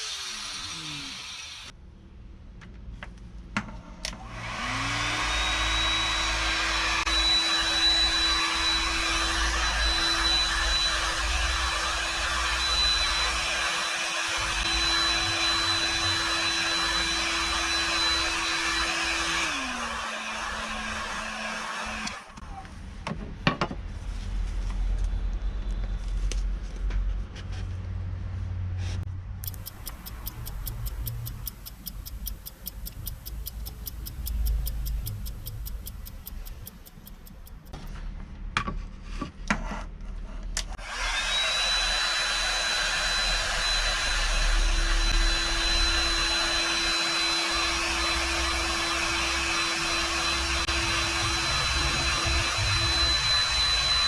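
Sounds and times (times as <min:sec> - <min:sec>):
small electric motor whining: 0:00.0 - 0:01.7, 0:04.2 - 0:22.3, 0:29.4 - 0:37.7, 0:40.8 - 0:54.0
fast even ticking: 0:29.4 - 0:37.7.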